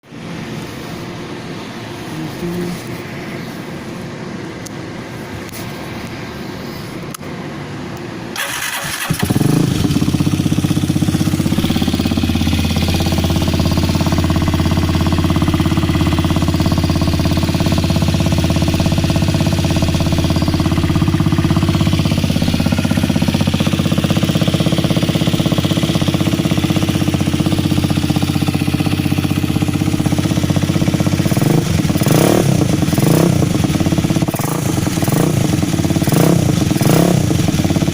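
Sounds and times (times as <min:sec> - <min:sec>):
motorcycle engine cranking: 0:08.4 - 0:10.8
motorcycle engine idling: 0:08.4 - 0:37.9.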